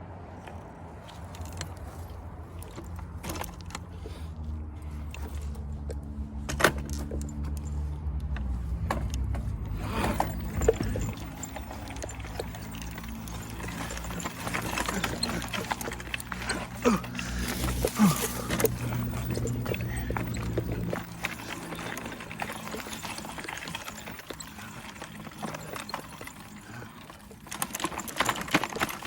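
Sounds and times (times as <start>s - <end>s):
clicks and rattling: 0.4s - 4.2s, 4.8s - 29.0s
electric bike motor humming: 7.1s - 28.8s.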